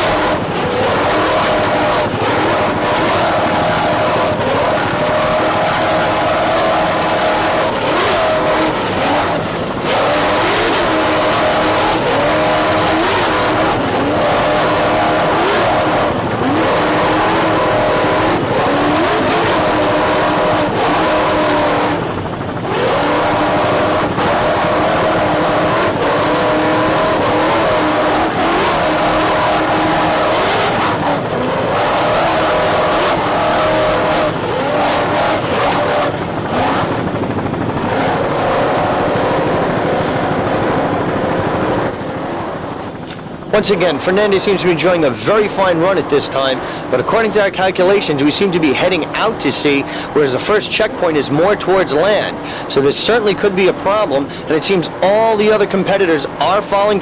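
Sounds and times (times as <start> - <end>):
powerboat engines at full throttle: 0.0 - 57.0.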